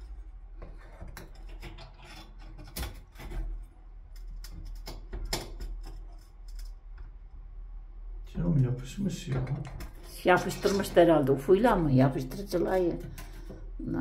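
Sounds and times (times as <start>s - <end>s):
glass pane scraping and rubbing: 0.6s - 3.7s.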